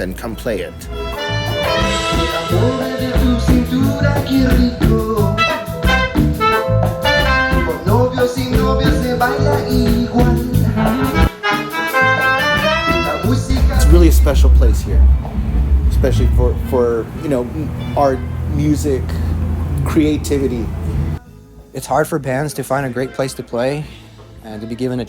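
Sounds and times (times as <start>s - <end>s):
latin band music: 0.8s - 21.2s.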